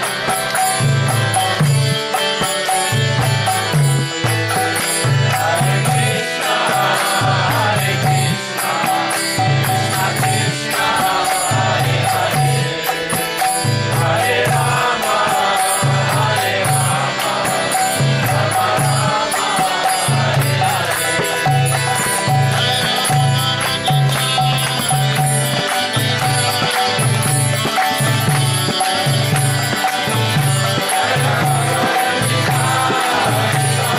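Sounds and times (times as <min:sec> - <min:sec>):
hand cymbals ticking: 0:00.0 - 0:33.9
voices chanting: 0:00.0 - 0:33.9.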